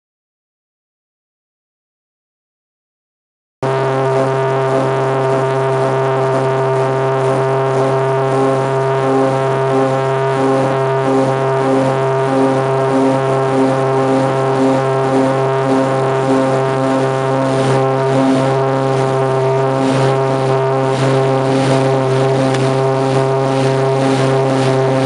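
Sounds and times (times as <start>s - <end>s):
aircraft engines droning: 3.6s - 25.0s.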